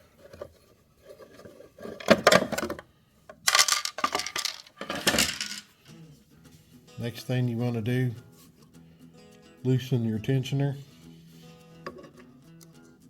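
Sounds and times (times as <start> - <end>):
metal parts clinking and clattering: 3.4 - 5.7.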